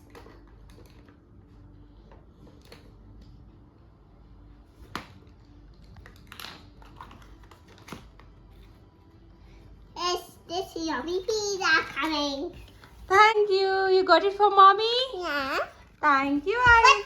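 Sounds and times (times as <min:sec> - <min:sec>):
faint room hum: 0:00.0 - 0:17.0.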